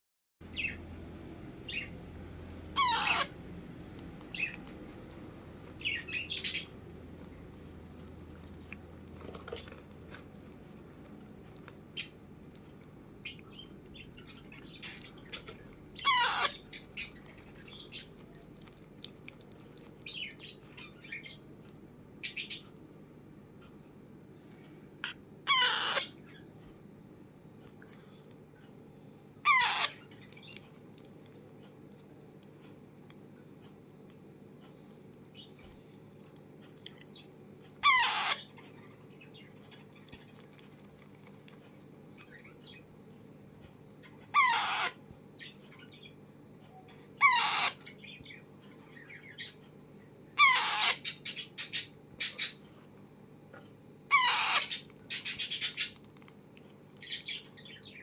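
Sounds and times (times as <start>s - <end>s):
parakeet squawking: 2.7s - 3.4s, 5.8s - 6.7s, 16.0s - 18.1s, 25.0s - 26.4s, 29.4s - 30.2s, 37.8s - 38.5s, 44.3s - 45.0s, 47.2s - 48.2s, 50.4s - 52.6s, 54.1s - 56.0s.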